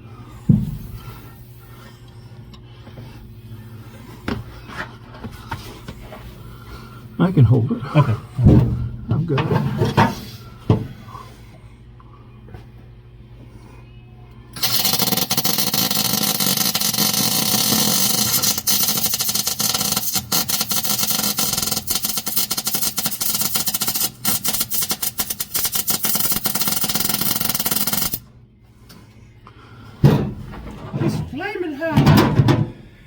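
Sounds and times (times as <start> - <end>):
welder arc crackling and hissing: 14.6 - 28.2.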